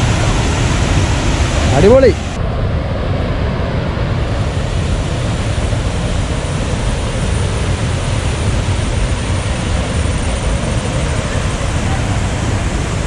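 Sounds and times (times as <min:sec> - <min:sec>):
waterfall rushing: 0:00.0 - 0:13.0.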